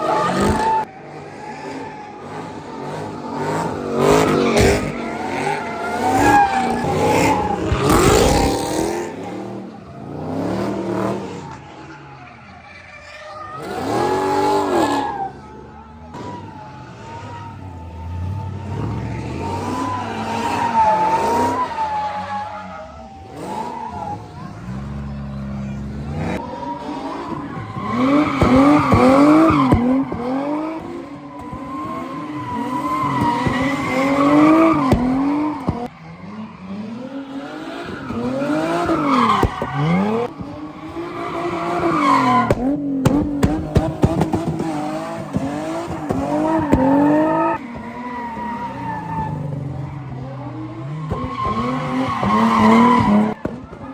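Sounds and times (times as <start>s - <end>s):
tires squealing: 0.0s - 53.9s
car engine revving hard: 2.8s - 11.4s, 27.6s - 39.1s.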